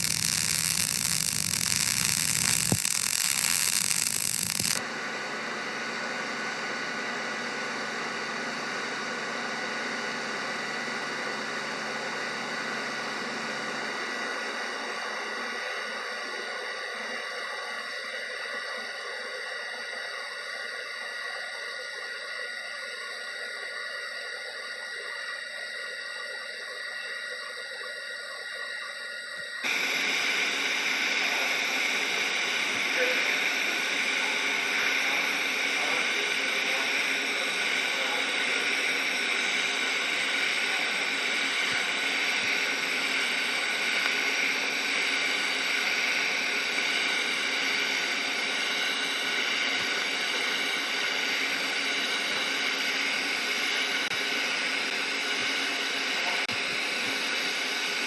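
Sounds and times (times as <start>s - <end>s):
welding arc hissing: 0.0s - 4.8s, 29.6s - 58.0s.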